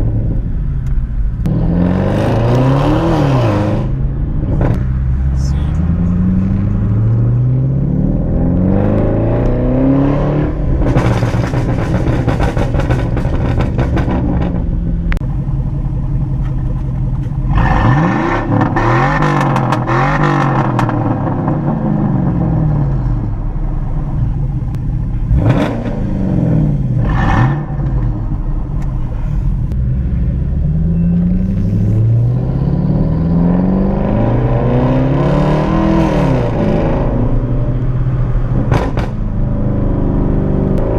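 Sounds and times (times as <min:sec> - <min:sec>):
exhaust crackling: 0:00.0 - 0:33.9
car exhaust under hard acceleration: 0:00.0 - 0:40.9
sharp exhaust pops: 0:10.8 - 0:14.8, 0:38.6 - 0:39.4
engine revs blipped: 0:29.7 - 0:37.8.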